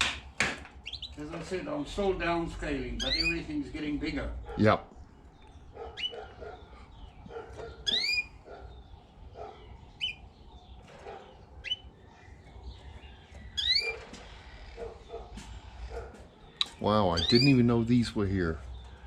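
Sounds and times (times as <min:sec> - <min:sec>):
pet birds chirping: 0:00.0 - 0:19.0.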